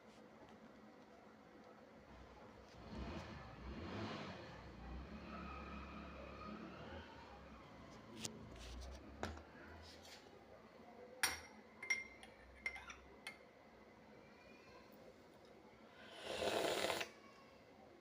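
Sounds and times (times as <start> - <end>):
utensils tapping glass and dishes: 11.2 - 13.5.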